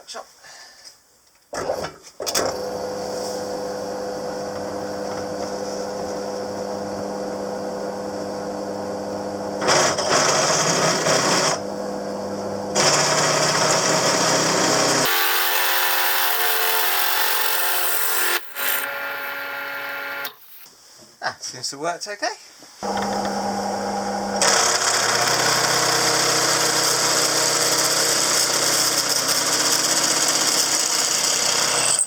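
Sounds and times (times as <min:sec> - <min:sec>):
electric power tool running: 0:12.7 - 0:20.7, 0:22.8 - 0:32.0
tool cutting metal hiss: 0:15.0 - 0:20.7.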